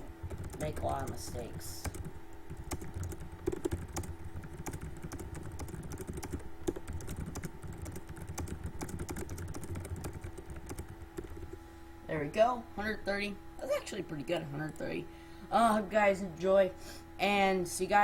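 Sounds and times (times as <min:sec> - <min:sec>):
fast typing on keyboard: 0:00.2 - 0:11.6.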